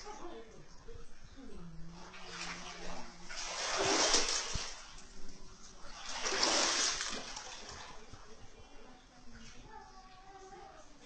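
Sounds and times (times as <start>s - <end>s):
water splashing: 1.9s - 8.4s.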